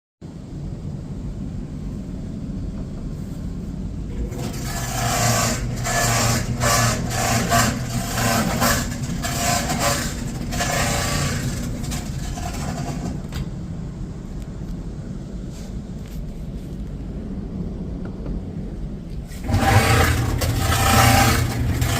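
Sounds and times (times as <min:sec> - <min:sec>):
rough pulsing dryer noise: 0:00.4 - 0:21.9
clothes dryer rumbling: 0:00.9 - 0:14.2, 0:17.5 - 0:21.9.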